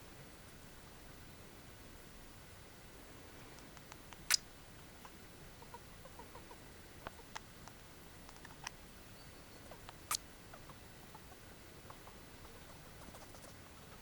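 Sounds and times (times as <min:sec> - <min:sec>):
faint ticks: 0:03.4 - 0:04.4, 0:06.8 - 0:08.8.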